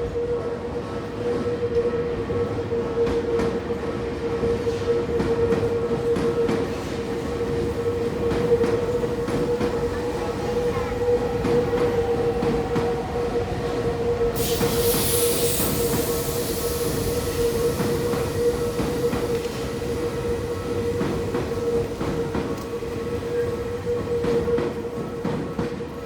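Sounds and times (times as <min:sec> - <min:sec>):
train wheels clicking over rails: 0:04.8 - 0:26.0
crossing warning signal tone: 0:05.5 - 0:25.0
air hiss: 0:14.3 - 0:20.8.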